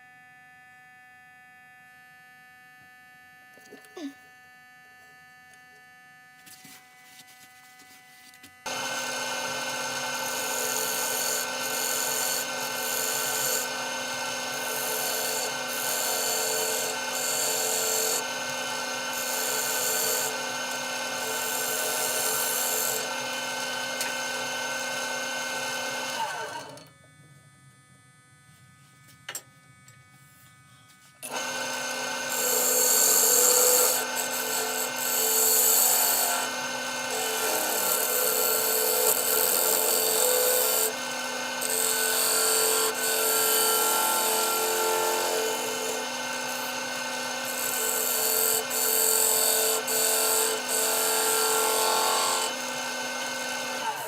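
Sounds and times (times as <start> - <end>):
tool scraping spinning wood: 6.5 - 26.8, 30.8 - 54.0
wood lathe motor humming: 8.7 - 26.9, 31.2 - 54.0.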